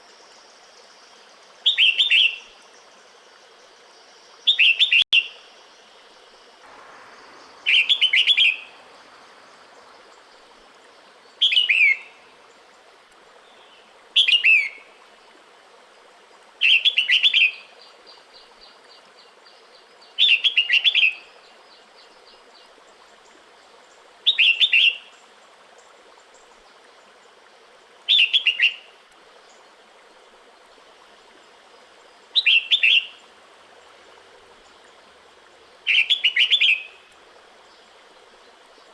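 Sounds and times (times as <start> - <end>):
bulbul calling: 6.6 - 12.2.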